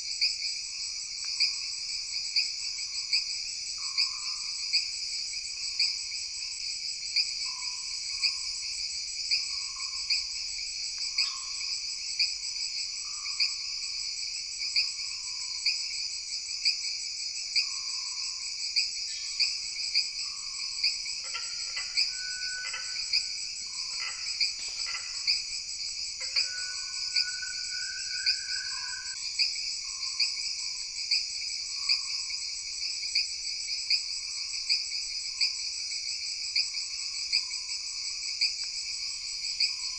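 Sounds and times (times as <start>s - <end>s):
insects trilling shrilly: 19.1s - 29.2s
frogs calling: 19.2s - 29.2s
rising whistle call: 26.4s - 29.2s.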